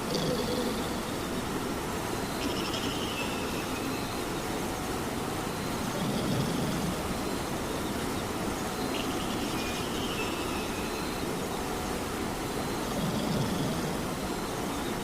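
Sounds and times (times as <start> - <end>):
steady rain: 0.0 - 15.0.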